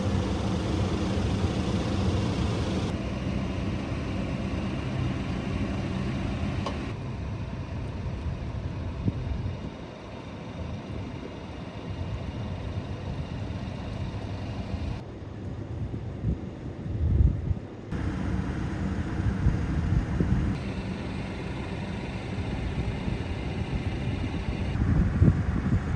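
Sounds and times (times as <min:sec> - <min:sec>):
excavator diesel engine running: 0:00.0 - 0:15.0, 0:17.9 - 0:24.8.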